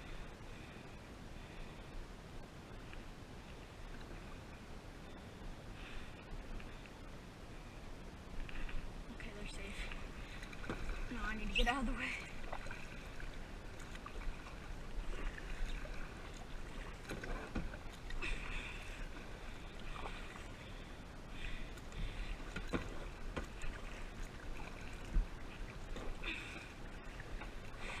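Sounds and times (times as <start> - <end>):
paddle strokes splashing water: 9.6 - 28.0.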